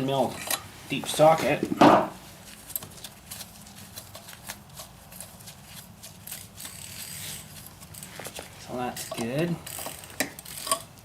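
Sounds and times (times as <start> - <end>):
ratchet wrench clicking: 6.2 - 8.1, 9.0 - 10.9.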